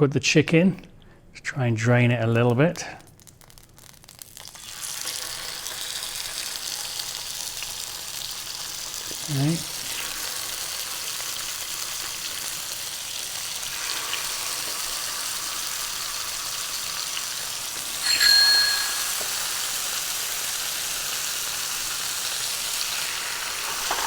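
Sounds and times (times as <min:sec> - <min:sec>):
chicken sizzling in frying pan: 0:03.2 - 0:18.1, 0:19.0 - 0:24.0
metal clink: 0:18.0 - 0:20.0.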